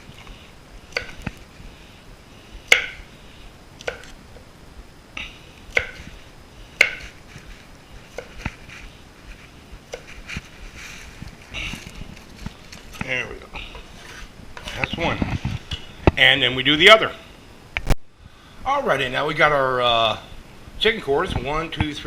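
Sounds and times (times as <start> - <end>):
knife chopping on cutting board: 2.7 - 3.0, 5.7 - 6.0, 6.8 - 7.2.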